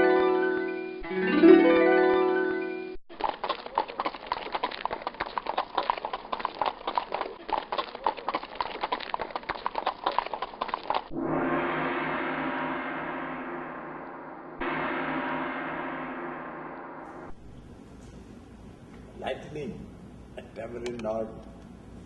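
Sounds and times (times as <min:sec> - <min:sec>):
horses galloping hoofbeats: 0:03.1 - 0:11.1.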